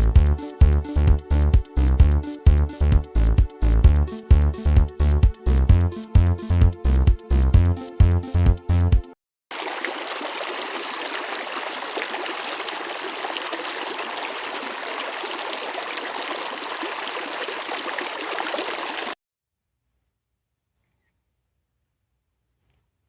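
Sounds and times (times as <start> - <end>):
river water rushing over log: 9.5 - 19.2.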